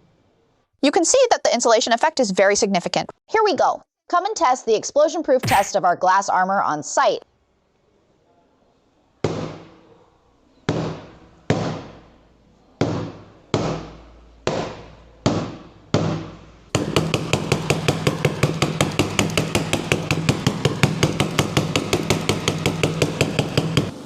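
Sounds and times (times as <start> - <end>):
hammer striking glass: 5.4 - 5.7, 14.6 - 24.0.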